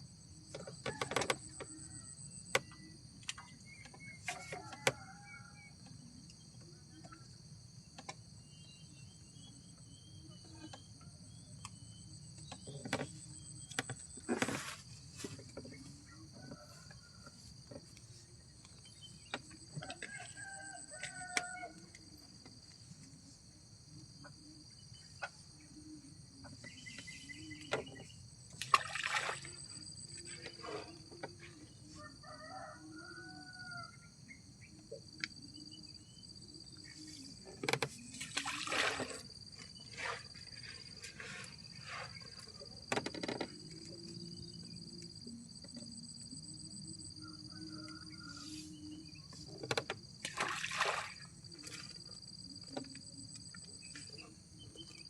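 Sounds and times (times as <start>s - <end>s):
high-pitched insect chorus: 12.6s - 55.0s
distant rooster crowing: 16.0s - 17.6s, 19.8s - 22.0s, 31.6s - 34.4s, 47.1s - 49.2s.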